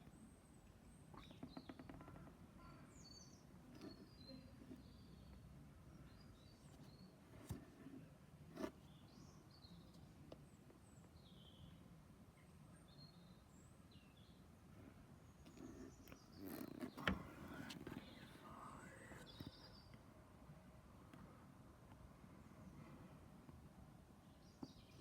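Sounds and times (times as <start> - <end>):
faint bird chirps: 0.0 - 8.0, 8.8 - 20.0
low background hiss: 2.4 - 25.0.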